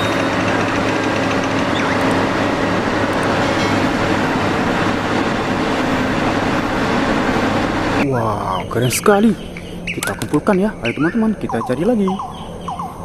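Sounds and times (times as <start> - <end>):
mechanical running noise: 0.0 - 8.0.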